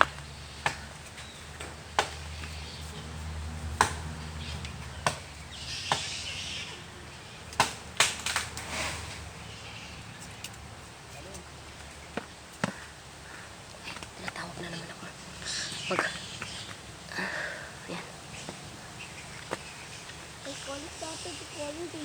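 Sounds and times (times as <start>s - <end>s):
hand tool chopping into soil: 0.0s - 2.6s, 3.8s - 4.1s, 7.6s - 9.2s
rustle: 0.0s - 22.0s.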